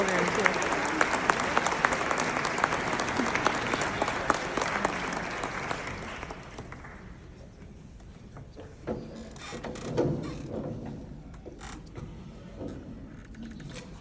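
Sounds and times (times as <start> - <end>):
audience applauding: 0.0 - 7.3.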